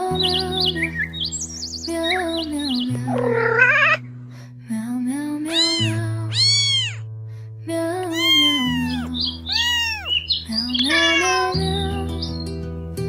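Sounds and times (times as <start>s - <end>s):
gentle background music: 0.0s - 13.0s
cat meowing: 2.1s - 4.0s, 5.5s - 7.1s, 8.1s - 11.6s.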